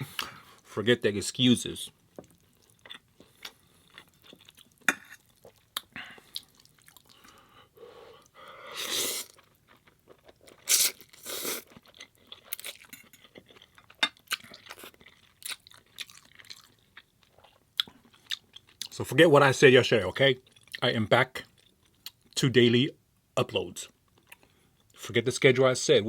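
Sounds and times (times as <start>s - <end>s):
person chewing and crunching food: 2.0s - 7.6s, 8.2s - 19.0s, 20.4s - 20.8s, 21.4s - 22.4s, 24.1s - 25.0s.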